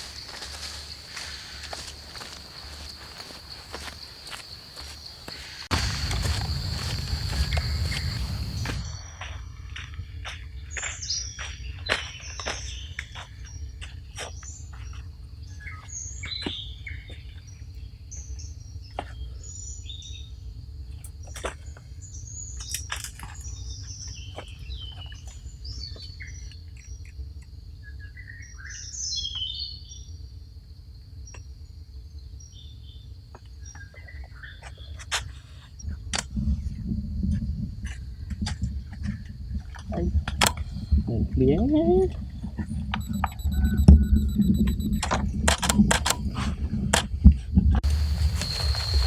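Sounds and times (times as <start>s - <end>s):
high insect drone: 0.0s - 10.9s, 47.8s - 49.0s
birds chirping: 0.0s - 15.0s, 43.0s - 45.0s, 47.8s - 49.0s
low rumble: 5.6s - 11.0s.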